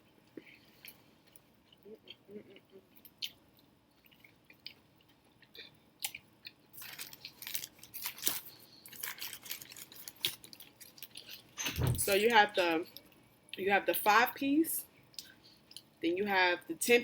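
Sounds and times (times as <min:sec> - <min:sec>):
chewing and mouth sounds: 0:00.3 - 0:11.6.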